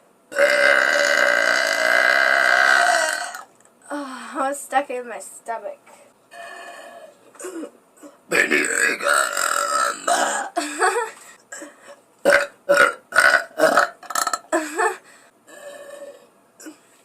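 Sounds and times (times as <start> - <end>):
women burping: 0.4 - 3.4, 6.4 - 11.7, 12.3 - 16.8.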